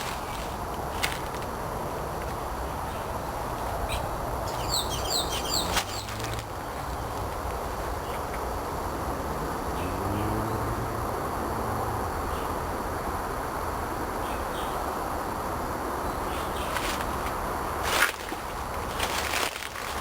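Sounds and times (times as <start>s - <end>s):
faint bird chirps: 3.9s - 6.1s
distant vehicle passing: 8.5s - 13.7s.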